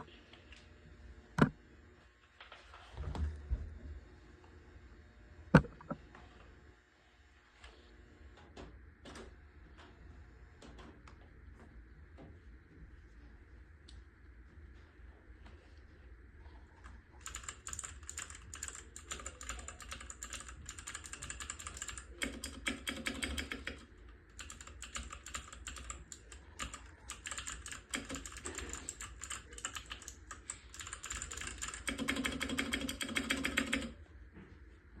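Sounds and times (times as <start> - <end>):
mechanical keyboard clicking: 17.2 - 23.8, 24.4 - 34.0.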